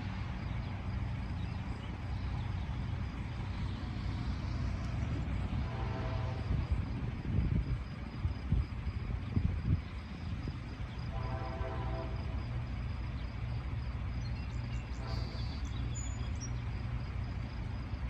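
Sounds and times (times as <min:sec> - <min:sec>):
low rumble: 0:00.0 - 0:11.3
locomotive air horn blast: 0:05.5 - 0:06.8, 0:11.1 - 0:12.4, 0:14.9 - 0:15.7.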